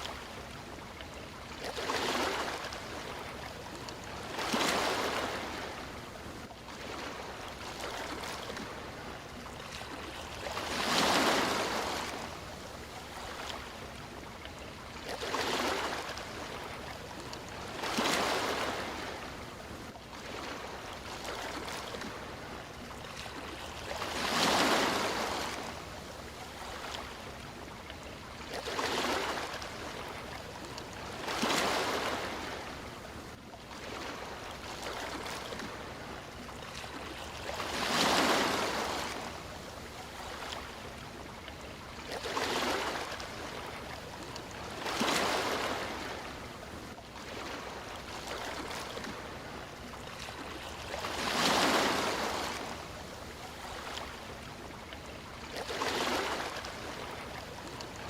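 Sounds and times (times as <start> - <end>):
sea waves breaking: 0.0 - 58.0.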